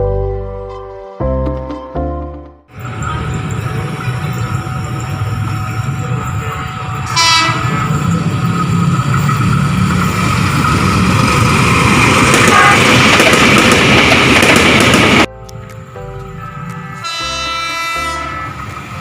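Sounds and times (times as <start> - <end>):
train running noise: 2.7 - 19.0
electric train horn: 7.0 - 8.1, 12.4 - 13.0, 16.4 - 18.8.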